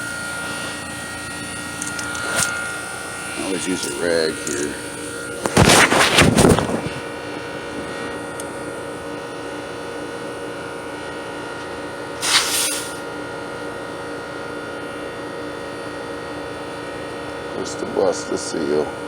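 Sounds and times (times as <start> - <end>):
refrigerant hissing: 0.0 - 7.2, 12.2 - 13.2
air conditioner humming: 0.0 - 14.3.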